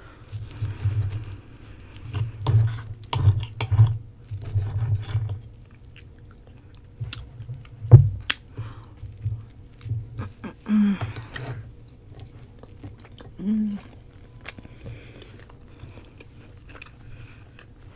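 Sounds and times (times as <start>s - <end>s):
chewing bread: 4.2s - 17.9s.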